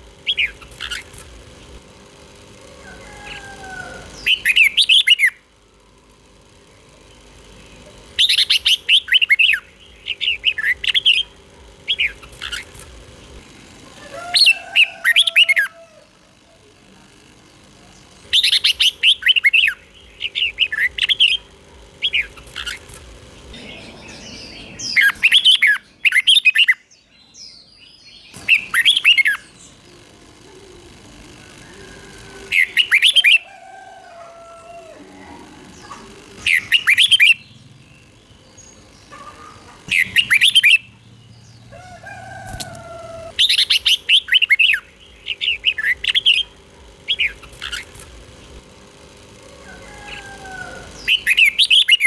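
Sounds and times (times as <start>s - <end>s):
bird singing whistled notes: 39.9s - 40.9s.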